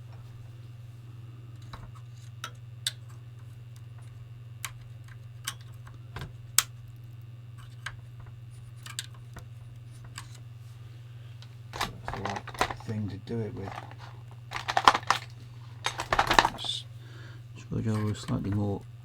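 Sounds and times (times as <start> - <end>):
steady low hum: 10.5 - 17.9.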